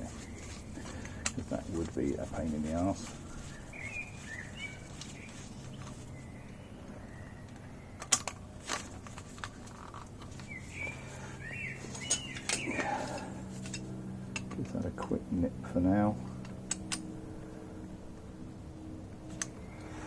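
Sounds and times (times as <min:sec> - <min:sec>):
small bird chirping: 0:02.1 - 0:08.1, 0:10.3 - 0:13.6
metal parts clicking: 0:11.9 - 0:14.8.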